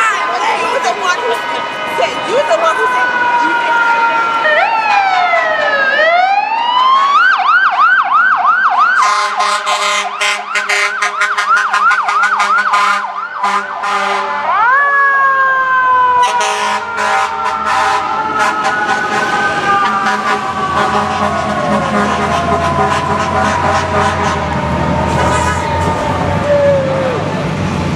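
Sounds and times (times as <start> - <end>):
fire truck siren: 0.0 - 27.9
air horn blasts: 9.0 - 14.5, 16.2 - 26.0.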